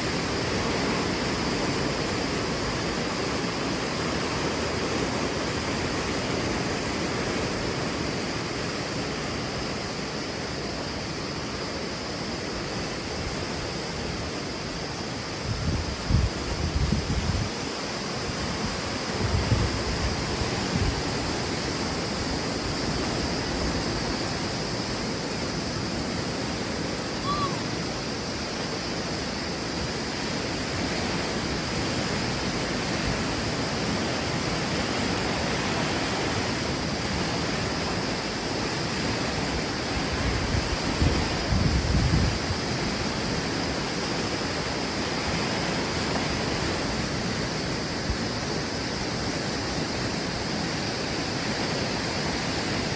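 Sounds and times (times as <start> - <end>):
river water rushing: 0.0 - 52.9
wind buffeting microphone: 15.4 - 17.7, 18.3 - 24.3, 39.5 - 43.2.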